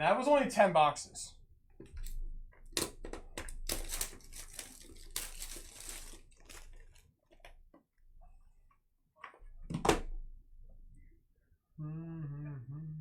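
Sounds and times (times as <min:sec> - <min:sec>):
plastic wrapping crinkling and tearing: 0:02.8 - 0:07.1.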